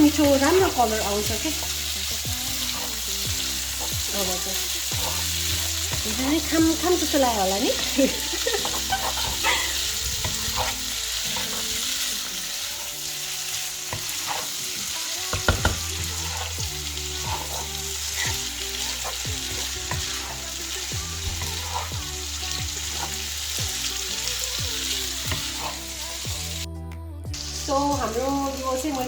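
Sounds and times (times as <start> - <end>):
noodles sizzling in a hot pan: 0.0 - 26.7, 27.4 - 29.0
tongs knocking against pan: 15.3 - 15.9.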